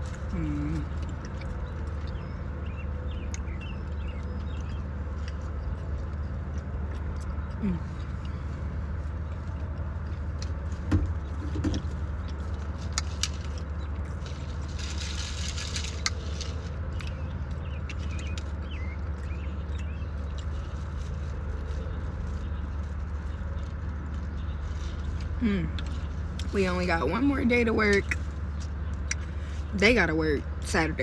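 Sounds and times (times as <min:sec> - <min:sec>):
low hum: 0:00.0 - 0:31.0
eating clicks and smacks: 0:00.9 - 0:02.2
wrapper rustling: 0:12.4 - 0:17.2, 0:20.2 - 0:26.4.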